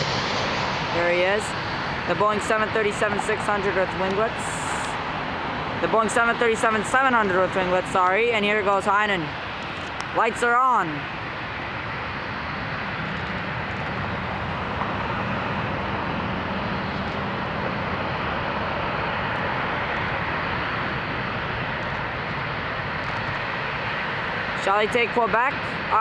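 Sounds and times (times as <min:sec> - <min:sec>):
jet engine rushing: 0:00.0 - 0:26.0.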